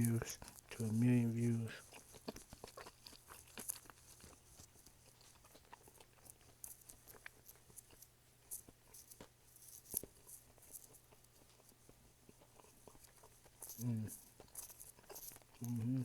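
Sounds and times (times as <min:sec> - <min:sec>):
person chewing food: 0:00.0 - 0:16.0
wet mouth clicks: 0:13.7 - 0:16.0.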